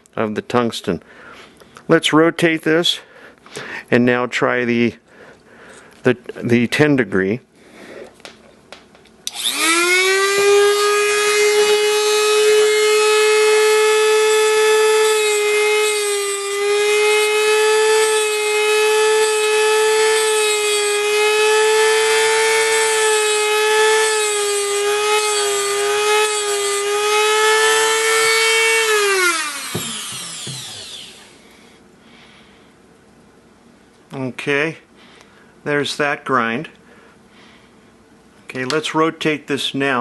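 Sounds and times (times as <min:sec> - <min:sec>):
grinder motor whining: 0:09.3 - 0:31.4.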